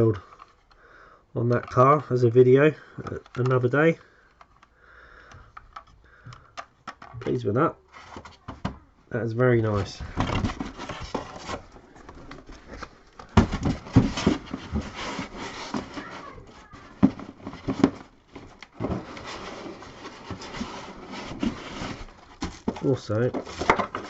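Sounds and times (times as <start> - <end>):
rustling and scraping: 6.9 - 8.8, 9.5 - 24.0
knocks in a box: 13.3 - 15.0.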